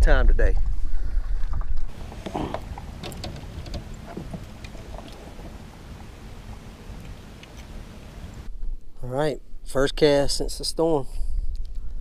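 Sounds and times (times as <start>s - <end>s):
wind buffeting microphone: 0.1s - 8.5s
light clicks and knocks on kayak: 1.5s - 8.5s.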